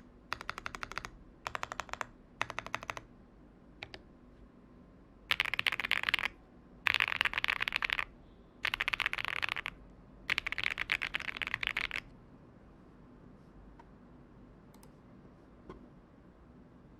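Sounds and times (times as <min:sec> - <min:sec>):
rapid mechanical keyboard clicks: 0:00.3 - 0:03.1, 0:03.8 - 0:04.0, 0:05.3 - 0:12.1.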